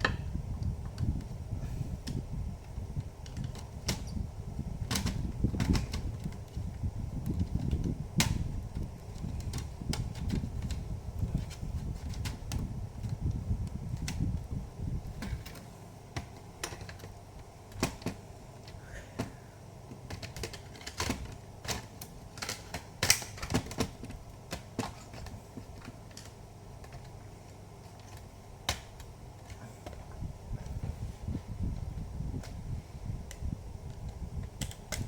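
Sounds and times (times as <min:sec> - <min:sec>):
plastic clips clicking: 0:33.3 - 0:35.0.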